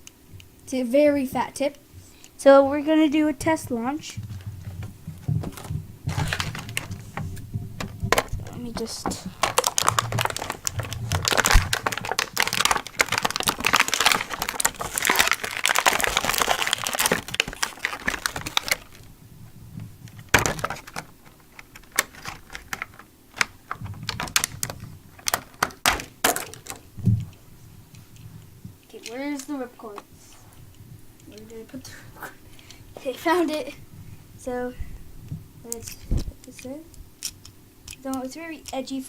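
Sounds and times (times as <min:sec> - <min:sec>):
plastic packaging crinkling: 0:04.2 - 0:30.0
plastic toy parts clattering: 0:04.3 - 0:19.1, 0:20.1 - 0:27.3.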